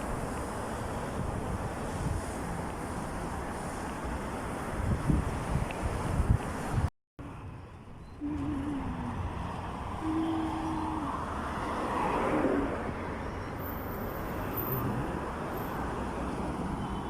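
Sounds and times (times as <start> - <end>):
road traffic: 0.0 - 17.0
vehicle passing: 8.4 - 16.7.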